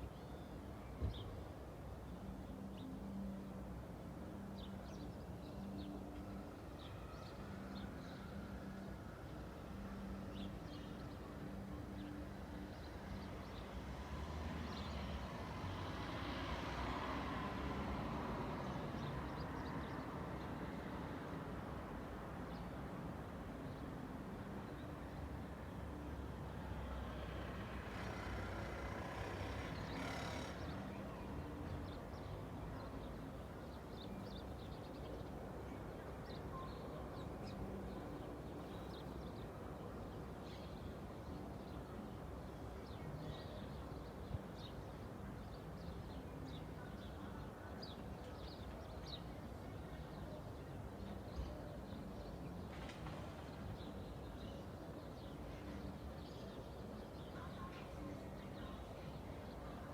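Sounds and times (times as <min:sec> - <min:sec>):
distant traffic hum: 0:03.8 - 0:59.9
car passing: 0:26.7 - 0:31.4.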